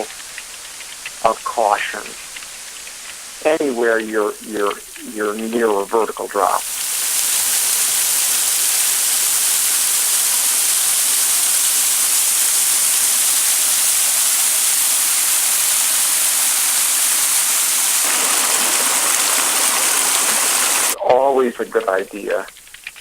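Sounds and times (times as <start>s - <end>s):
waterfall rushing: 0.0s - 23.0s.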